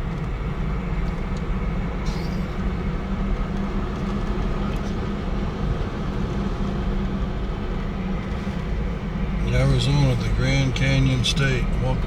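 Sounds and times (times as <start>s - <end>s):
car cabin road and engine rumble: 0.0s - 12.0s.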